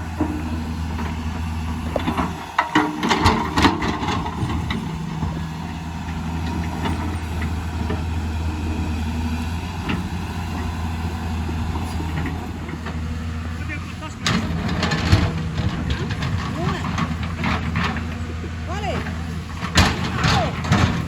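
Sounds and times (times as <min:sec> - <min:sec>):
excavator diesel engine running: 0:00.0 - 0:21.0
sharp knocks and clanks: 0:14.2 - 0:21.0.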